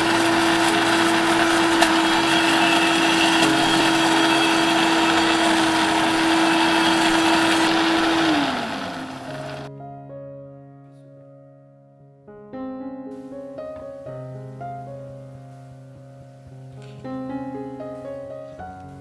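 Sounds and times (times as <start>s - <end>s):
blender motor whine: 0.0s - 9.7s
piano music: 0.0s - 19.0s.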